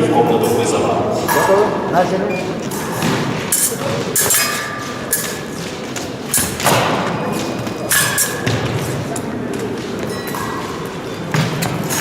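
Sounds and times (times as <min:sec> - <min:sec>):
footwork thumping on metal piste: 0:02.7 - 0:12.0.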